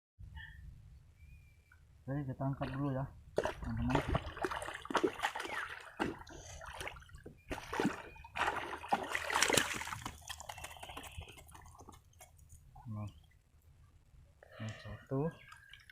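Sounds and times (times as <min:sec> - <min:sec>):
water splashing and sloshing: 0:02.4 - 0:12.6, 0:15.4 - 0:15.9.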